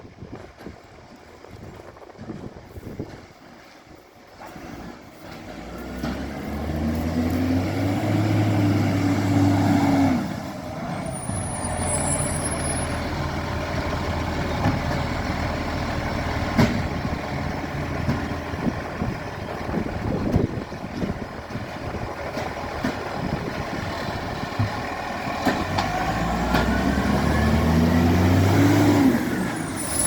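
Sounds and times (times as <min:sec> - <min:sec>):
garbage truck engine: 0:00.2 - 0:30.0
high squeal: 0:10.9 - 0:13.1, 0:29.3 - 0:30.0.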